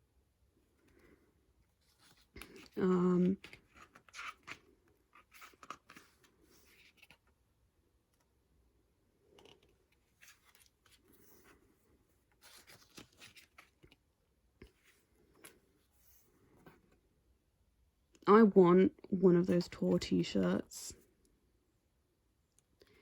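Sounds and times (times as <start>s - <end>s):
pages being turned: 1.8s - 7.4s, 9.4s - 11.6s, 12.2s - 14.0s.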